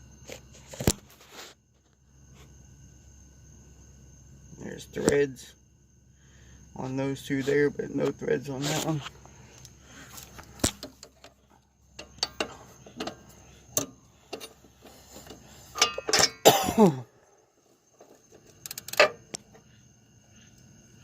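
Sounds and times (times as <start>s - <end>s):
metallic clicks of hand tools: 12.0s - 13.2s, 15.2s - 16.4s, 18.6s - 19.4s
throat clearing: 16.4s - 17.1s.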